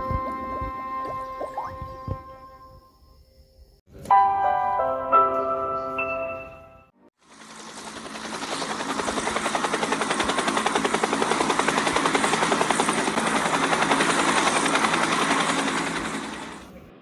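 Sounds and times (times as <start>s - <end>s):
helicopter rotor chopping: 7.2s - 17.0s.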